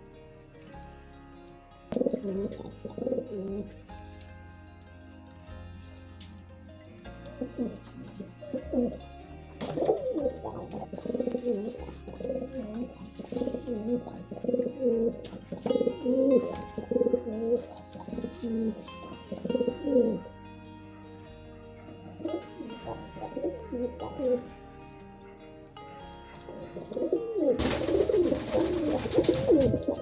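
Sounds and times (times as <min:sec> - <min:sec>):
pigeons cooing: 0:01.9 - 0:03.7, 0:07.3 - 0:20.3, 0:22.0 - 0:24.5, 0:26.4 - 0:30.0.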